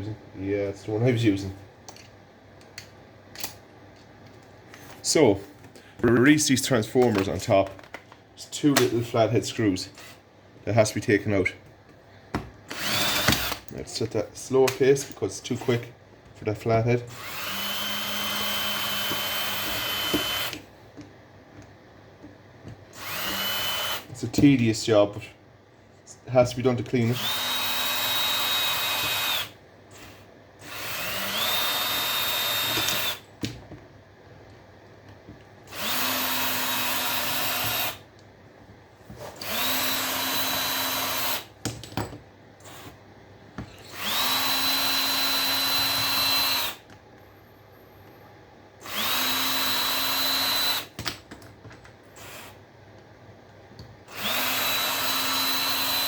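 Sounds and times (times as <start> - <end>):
power drill motor whine: 12.7 - 13.6, 17.1 - 20.6, 23.0 - 24.1, 27.1 - 33.2, 35.7 - 38.0, 39.3 - 41.5, 43.7 - 46.8, 48.8 - 50.9, 52.2 - 52.6, 54.1 - 56.0.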